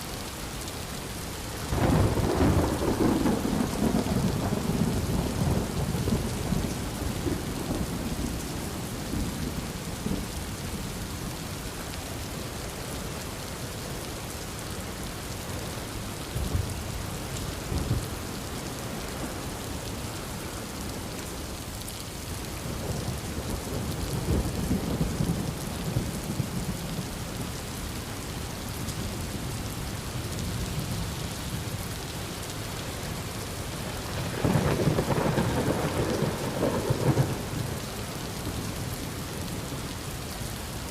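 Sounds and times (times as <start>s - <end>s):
heavy rain pouring: 0.0s - 40.9s
thunder rumbling: 1.7s - 10.3s, 33.8s - 39.4s.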